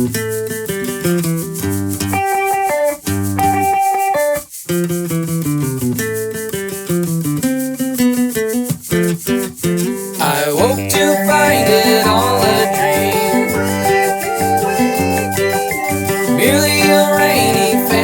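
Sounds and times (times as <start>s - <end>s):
shaker keeping time: 0.0s - 18.0s
electric guitar chords: 10.6s - 18.0s.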